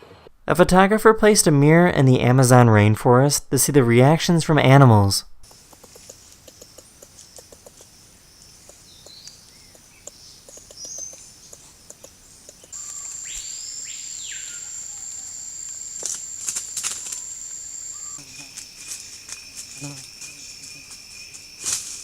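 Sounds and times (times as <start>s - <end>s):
insect chirps and ticks: 5.4s - 22.0s
sharp clicks: 5.5s - 13.2s
high-pitched insect drone: 5.5s - 22.0s
bird sweeping call: 12.8s - 18.6s.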